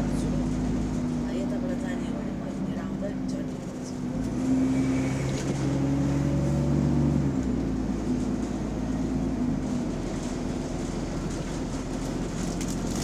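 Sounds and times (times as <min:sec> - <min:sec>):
diesel bus engine running: 0:00.0 - 0:13.0.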